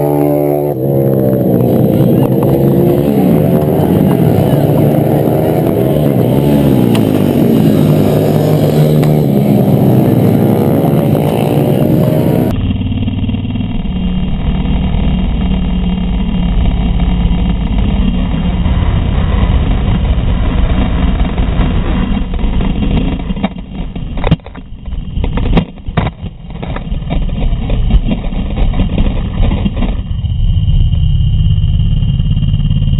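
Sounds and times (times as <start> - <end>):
pit bike engines revving: 0.0 - 23.2
muffled engine rumble: 0.0 - 32.9
wind noise on camera: 0.0 - 32.9.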